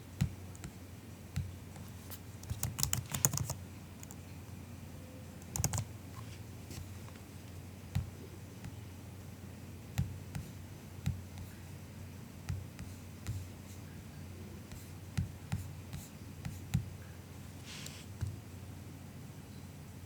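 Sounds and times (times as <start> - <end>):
laptop keys clicking: 2.4 - 4.2, 5.4 - 5.9.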